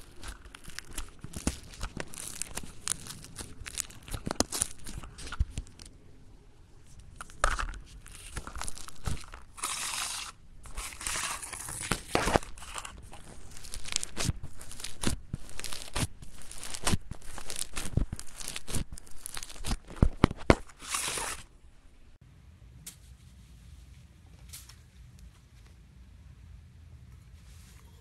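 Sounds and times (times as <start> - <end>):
foam slime crackling and popping: 0.0 - 5.9, 6.9 - 21.5.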